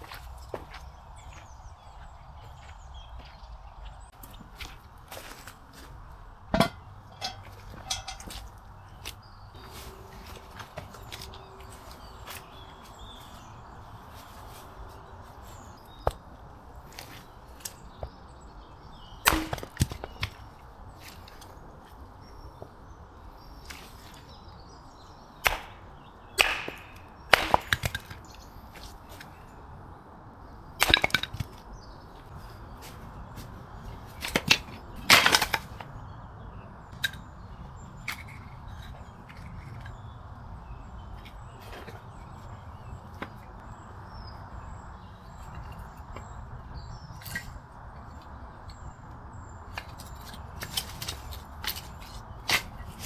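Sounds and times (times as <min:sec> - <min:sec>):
firewood being chopped: 0:06.5 - 0:13.4, 0:19.2 - 0:21.6, 0:25.4 - 0:29.4, 0:30.8 - 0:35.9, 0:49.7 - 0:53.0.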